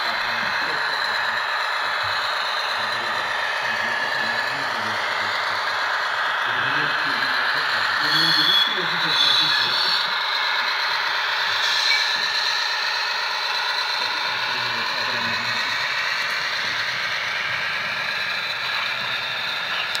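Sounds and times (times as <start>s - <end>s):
model locomotive running sound: 0.0s - 20.0s
model train wheel squeal: 6.6s - 20.0s.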